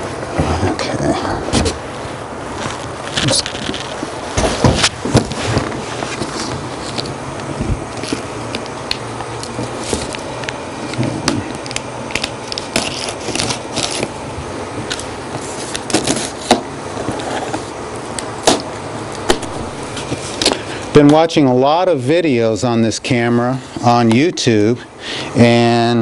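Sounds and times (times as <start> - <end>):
low background hum: 0.0 - 26.0
sharp knocks: 19.3 - 20.7.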